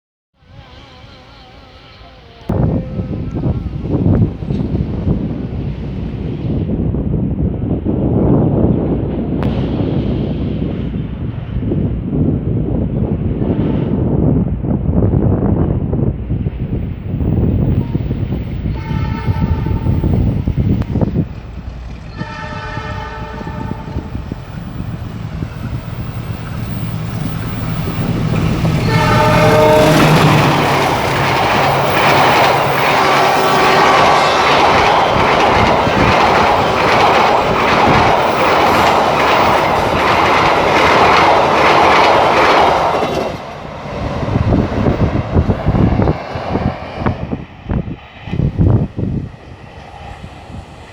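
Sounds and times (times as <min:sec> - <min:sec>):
train passing with rolling rumble: 0:00.4 - 0:50.9
train horn: 0:17.7 - 0:20.3, 0:22.0 - 0:24.2, 0:28.6 - 0:31.1, 0:31.8 - 0:35.6.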